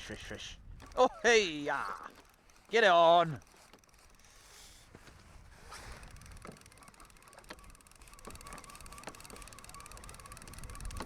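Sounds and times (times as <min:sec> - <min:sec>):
fishing reel clicks: 0:00.1 - 0:04.5, 0:05.6 - 0:11.0.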